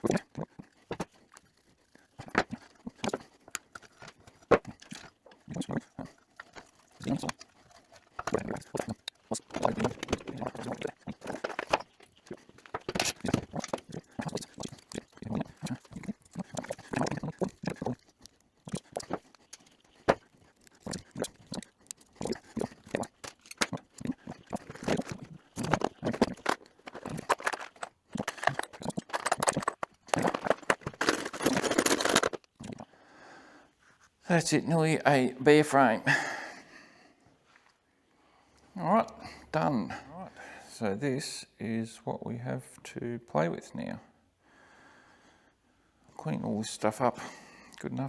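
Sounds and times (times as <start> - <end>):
tools and metal parts clattering: 6.3 - 14.9, 22.8 - 24.0, 24.6 - 32.5.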